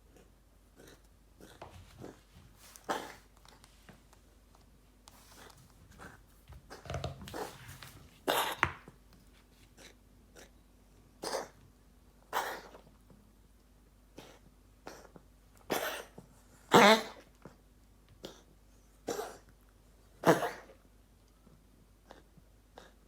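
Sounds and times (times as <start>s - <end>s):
pet animal coughing: 8.2s - 8.6s, 12.3s - 12.8s, 15.7s - 17.2s, 20.2s - 20.8s.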